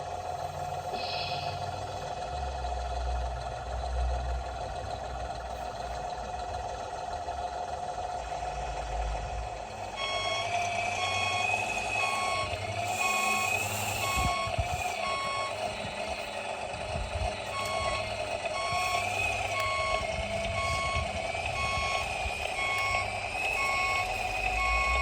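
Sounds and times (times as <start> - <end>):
wavering motor whine: 8.7 - 25.0
reversing alarm beeping: 9.8 - 25.0.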